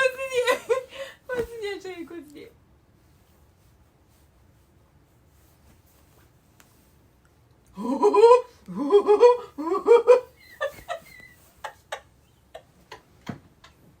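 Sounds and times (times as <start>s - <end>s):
person making rising vocal sounds: 7.7s - 10.4s.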